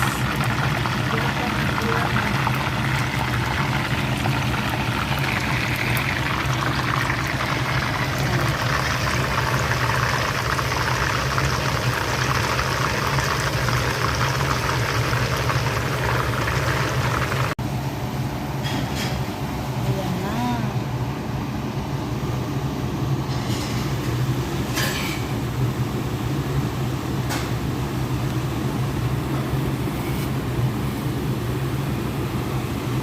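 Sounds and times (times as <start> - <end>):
chicken deep-frying in oil: 0.0 - 17.8.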